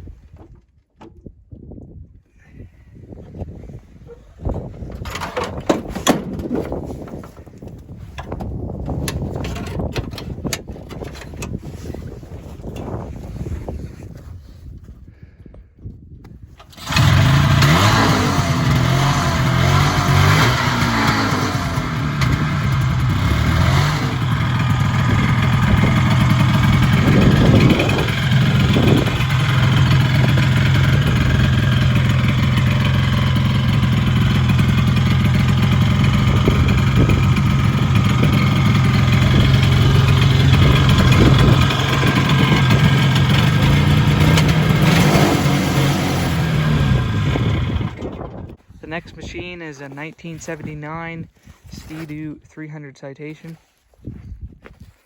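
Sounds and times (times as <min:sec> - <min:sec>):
snowmobile engine running: 0:16.7 - 0:48.4.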